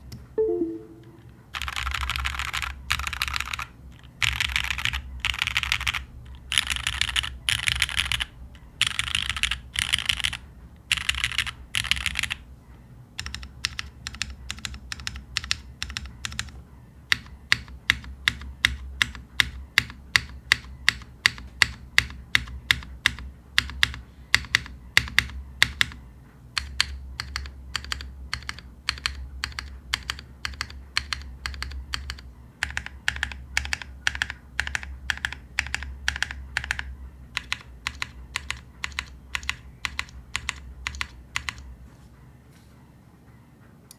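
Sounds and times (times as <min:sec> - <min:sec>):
mechanical keyboard typing: 0:00.4 - 0:12.4, 0:13.2 - 0:26.0, 0:26.6 - 0:41.7.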